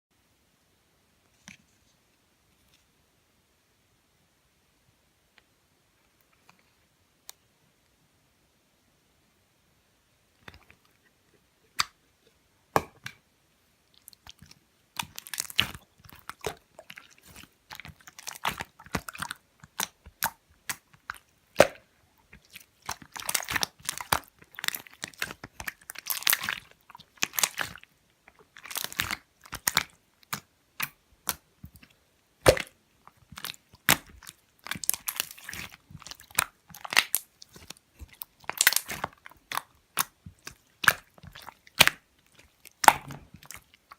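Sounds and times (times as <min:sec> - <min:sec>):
slime squeezed by hand: 0:15.0 - 0:21.8, 0:22.4 - 0:27.8, 0:28.5 - 0:43.9
sticky clicks and bubble pops: 0:33.3 - 0:42.0, 0:42.7 - 0:43.9.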